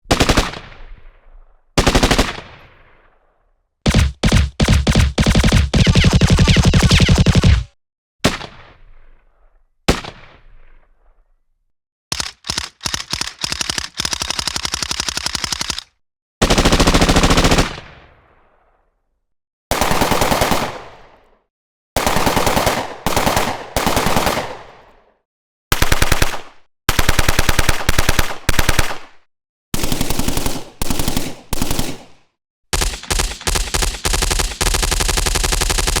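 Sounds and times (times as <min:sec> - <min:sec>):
machine-gun bursts: 0:03.9 - 0:07.8, 0:12.1 - 0:17.7, 0:32.8 - 0:36.0.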